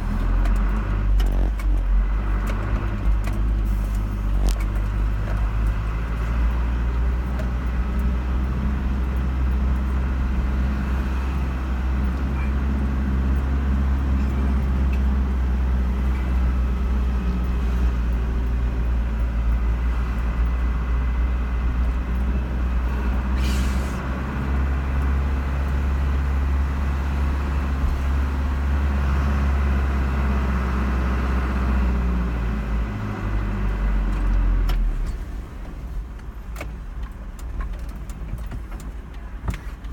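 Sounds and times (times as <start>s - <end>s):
car engine and tyre drone: 0.0s - 39.9s
short hiss: 23.4s - 24.0s.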